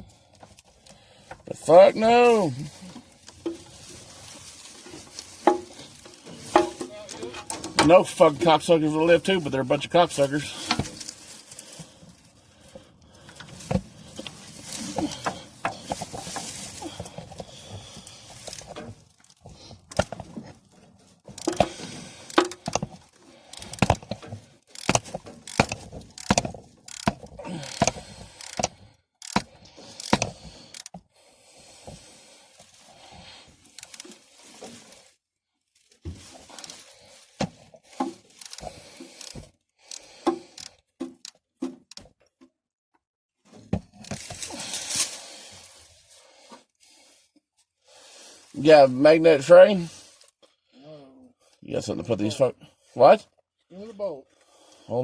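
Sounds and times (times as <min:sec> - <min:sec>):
ratchet clicks: 0:23.5 - 0:24.0, 0:24.7 - 0:29.4, 0:30.0 - 0:30.9, 0:33.8 - 0:34.1, 0:38.4 - 0:41.4.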